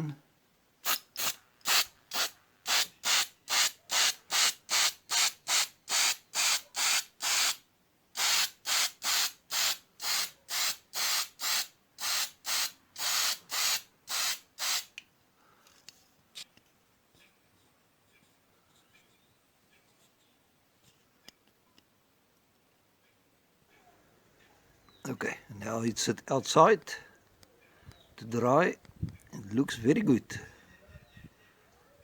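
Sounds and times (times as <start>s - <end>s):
spray can hissing bursts: 0.8s - 7.6s, 8.2s - 14.9s.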